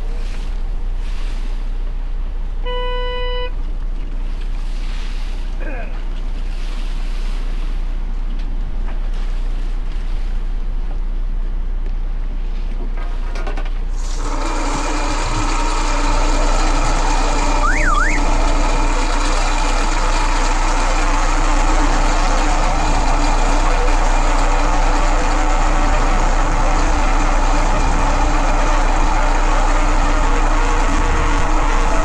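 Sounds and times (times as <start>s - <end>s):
boat motor running: 14.0s - 32.0s
up-and-down whistle: 17.4s - 18.4s.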